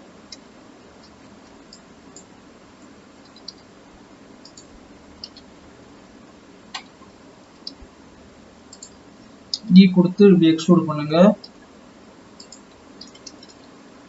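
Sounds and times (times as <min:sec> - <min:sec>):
low steady hiss: 0:00.0 - 0:14.0
computer mouse clicks: 0:00.3 - 0:03.7, 0:04.4 - 0:05.5, 0:06.7 - 0:07.0, 0:07.6 - 0:07.9, 0:08.7 - 0:09.7, 0:12.4 - 0:13.8.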